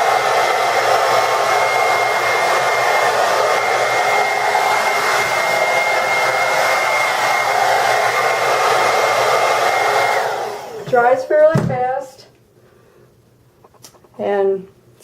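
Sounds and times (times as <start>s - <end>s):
blow dryer running: 0.0s - 11.9s.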